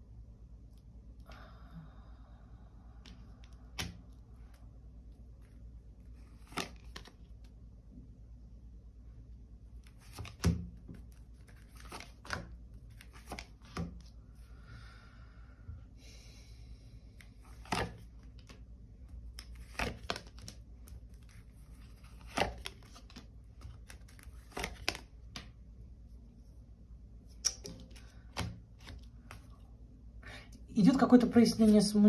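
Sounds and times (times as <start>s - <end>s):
cards rustling: 3.1s - 7.5s, 9.8s - 14.1s, 17.2s - 25.6s
cards snapping and tapping: 6.4s - 7.2s, 9.9s - 14.1s, 17.5s - 18.6s, 19.3s - 21.3s, 22.0s - 25.6s, 27.3s - 29.4s.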